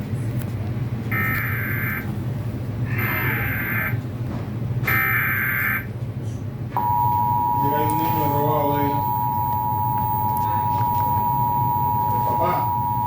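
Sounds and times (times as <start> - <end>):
steady low hum: 5.8 - 13.0.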